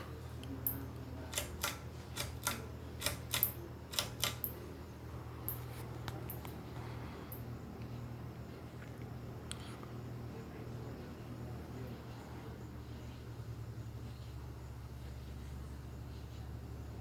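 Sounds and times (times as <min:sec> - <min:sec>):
steady low hum: 0:00.0 - 0:17.0
sharp irregular clicks: 0:00.6 - 0:04.6.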